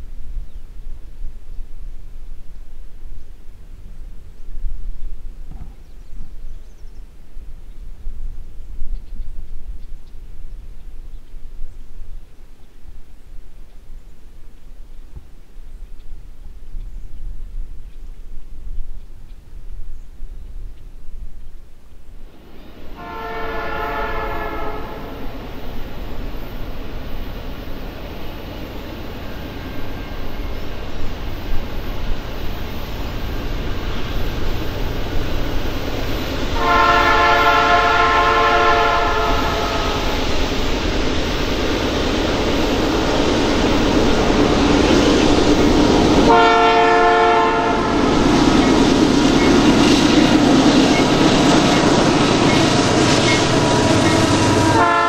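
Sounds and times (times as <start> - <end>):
train running noise: 0.0 - 55.0
locomotive horn blasts: 23.0 - 25.3, 36.6 - 40.2, 46.2 - 48.1, 52.4 - 55.0.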